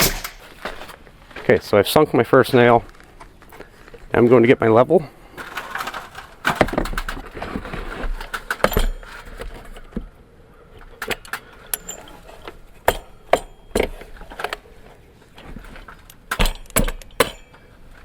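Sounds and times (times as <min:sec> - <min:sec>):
tools clicking and knocking on wood: 0:00.0 - 0:01.0, 0:05.4 - 0:10.1, 0:10.8 - 0:14.7, 0:15.4 - 0:18.0.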